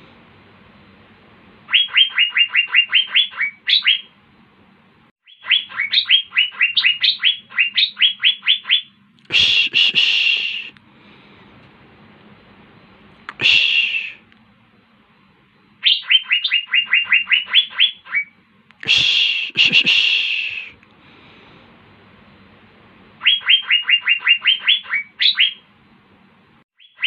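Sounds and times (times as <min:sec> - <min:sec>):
harsh bird call: 0:01.7 - 0:04.2, 0:05.2 - 0:10.8, 0:13.4 - 0:14.3, 0:15.8 - 0:20.8, 0:23.2 - 0:25.7, 0:26.8 - 0:27.0.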